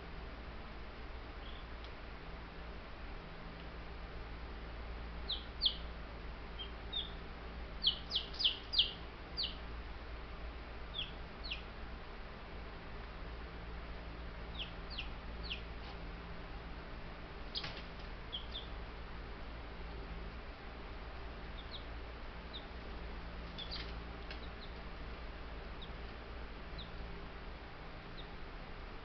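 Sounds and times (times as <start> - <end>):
low steady hum: 0.0 - 29.0
chicks peeping: 5.2 - 5.9, 6.6 - 7.2, 7.8 - 9.6, 10.9 - 11.7, 14.5 - 16.0, 17.4 - 18.8, 21.5 - 24.9, 25.6 - 27.1, 28.1 - 28.4.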